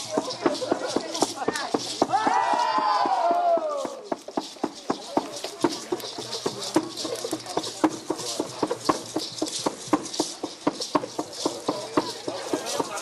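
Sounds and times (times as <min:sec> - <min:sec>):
rhythmic sharp knocking: 0:00.0 - 0:13.0
steady high hiss: 0:03.2 - 0:13.0.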